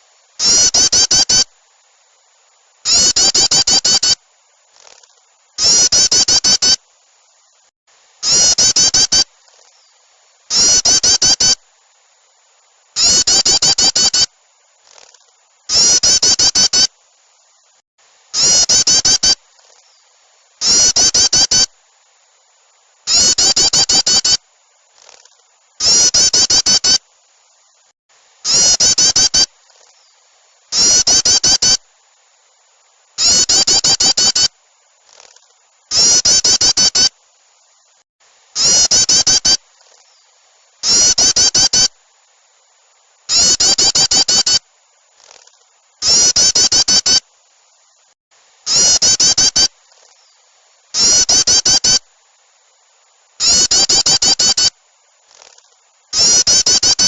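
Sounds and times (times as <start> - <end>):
rapid chattering bird calls: 0.4 - 1.5, 2.8 - 6.8, 8.2 - 11.6, 13.0 - 16.9, 18.4 - 21.7, 23.1 - 27.0, 28.5 - 31.8, 33.2 - 37.1, 38.6 - 41.9, 43.3 - 47.2, 48.7 - 50.4, 51.0 - 52.0, 53.4 - 54.7, 55.3 - 57.0.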